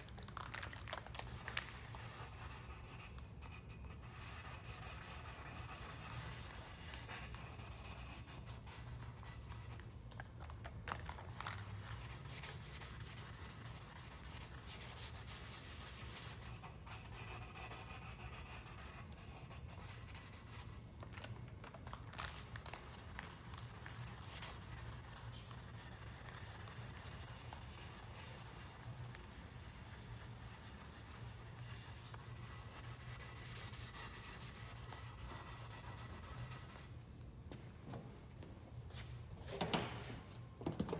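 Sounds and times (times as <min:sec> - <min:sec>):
hand sanding scratchy strokes: 0:23.2 - 0:36.9.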